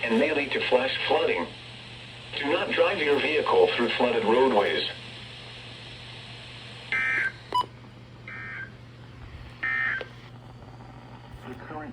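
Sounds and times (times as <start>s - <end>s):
steady low hum: 0.0s - 11.9s.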